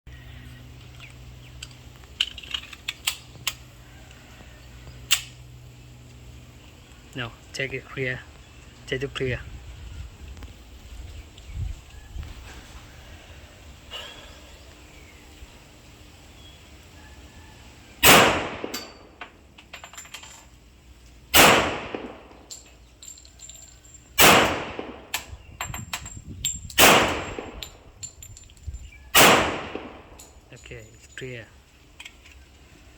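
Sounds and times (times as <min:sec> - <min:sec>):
steady low hum: 0:00.1 - 0:32.9
pistol shots: 0:18.0 - 0:19.0, 0:21.3 - 0:22.4, 0:24.2 - 0:25.3, 0:26.8 - 0:27.7, 0:29.1 - 0:30.2.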